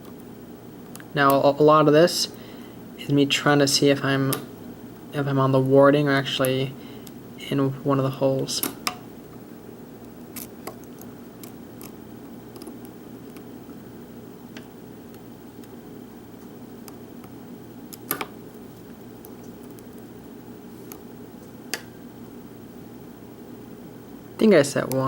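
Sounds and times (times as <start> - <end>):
steady background hum: 0.0 - 25.0.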